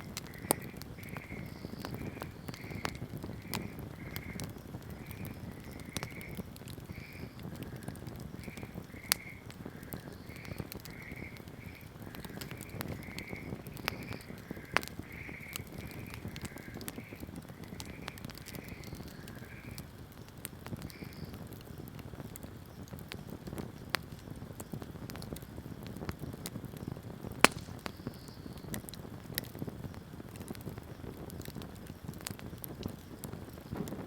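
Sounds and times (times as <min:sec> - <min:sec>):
fire crackling and popping: 0:00.0 - 0:34.0
campfire flame rushing: 0:27.4 - 0:27.9.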